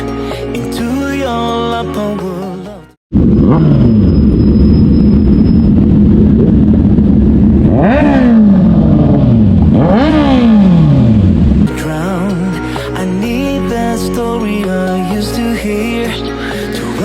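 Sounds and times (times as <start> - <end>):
background music: 0.0 - 3.0, 11.7 - 17.0
motorcycle engine revving: 3.1 - 11.7.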